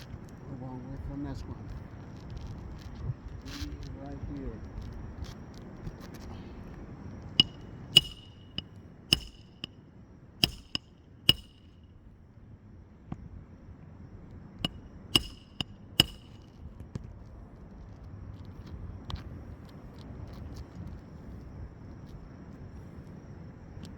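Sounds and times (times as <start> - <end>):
hammer striking roofing nails: 7.4 - 9.7, 10.4 - 11.8, 14.6 - 16.6.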